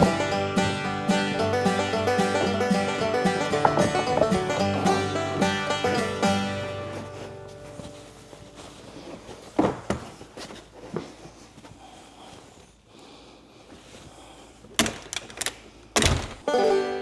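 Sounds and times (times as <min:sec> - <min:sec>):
patio chairs knocking: 0:00.0 - 0:06.1, 0:14.8 - 0:16.6.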